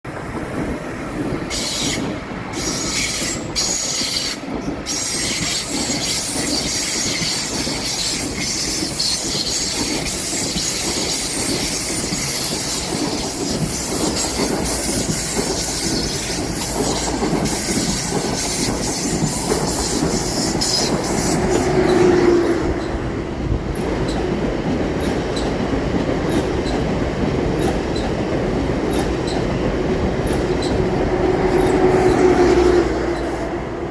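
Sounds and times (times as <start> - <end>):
train rumble: 0.1 - 33.9
train wheels squealing: 1.5 - 22.2.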